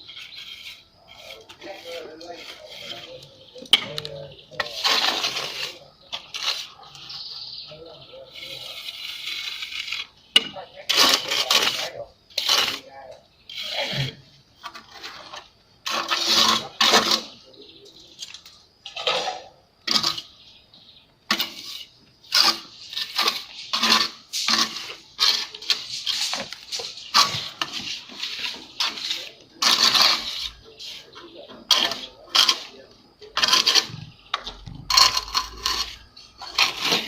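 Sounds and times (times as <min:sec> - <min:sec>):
steel trowel scraping and clinking: 0:00.1 - 0:07.3, 0:13.5 - 0:17.4, 0:18.8 - 0:20.3, 0:21.3 - 0:37.0.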